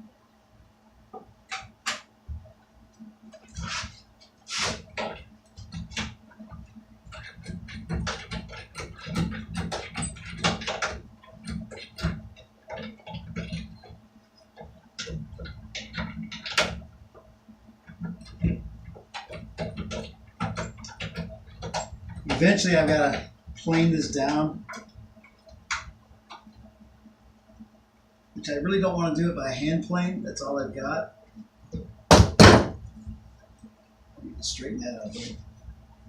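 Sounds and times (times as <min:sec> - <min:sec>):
hand tools clicking and scraping: 0:07.1 - 0:13.9.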